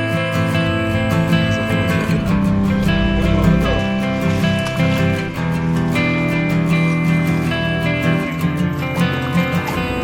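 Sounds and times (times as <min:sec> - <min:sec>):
strummed guitar music: 0:00.0 - 0:10.0.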